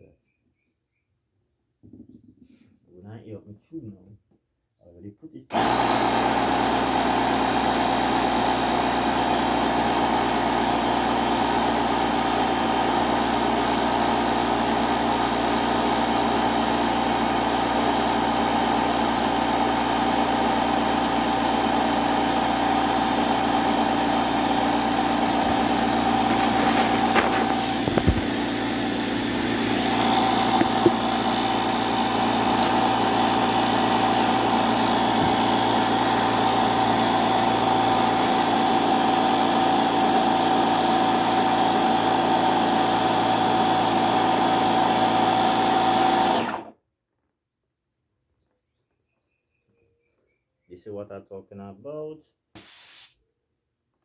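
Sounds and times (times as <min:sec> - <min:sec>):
small electric motor humming: 0:05.5 - 0:46.6.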